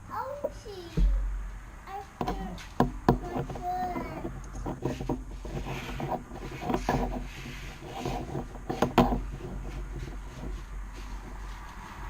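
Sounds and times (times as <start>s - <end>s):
sharp knock: 1.0s - 1.5s
metal parts rubbing and clicking: 2.2s - 11.4s.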